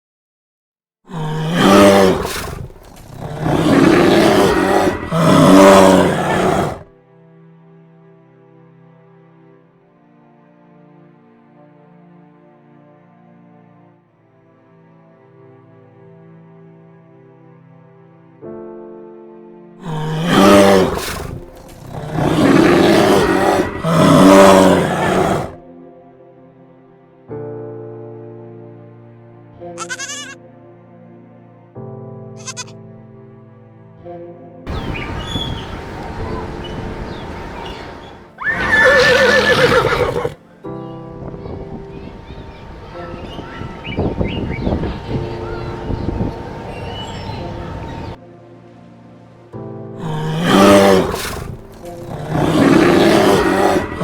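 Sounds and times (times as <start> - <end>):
large animal roaring: 1.1 - 6.9, 19.8 - 25.6, 34.7 - 40.4, 50.0 - 54.0
faint music: 19.8 - 54.0.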